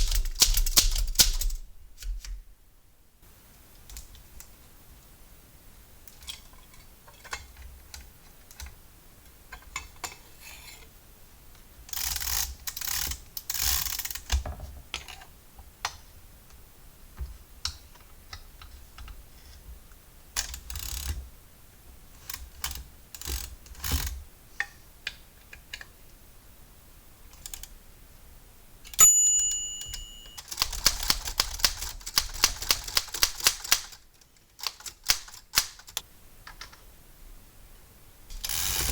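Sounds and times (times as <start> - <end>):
typewriter clicks and rattles: 0.0 - 2.3, 20.4 - 21.2, 22.2 - 24.2, 29.8 - 36.0
typewriter carriage bell ding: 29.0 - 30.9.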